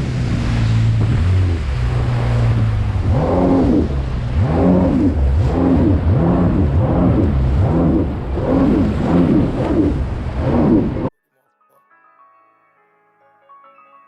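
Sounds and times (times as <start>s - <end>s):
jet ski engine running hard: 0.0s - 11.1s.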